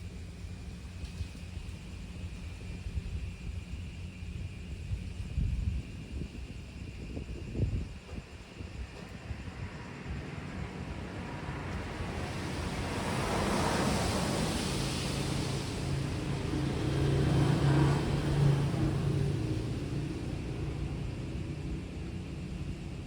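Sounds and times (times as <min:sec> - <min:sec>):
passing car engine hum: 0:08.6 - 0:23.0
tyres hissing on wet road: 0:08.6 - 0:23.0
rain hissing: 0:09.8 - 0:21.2.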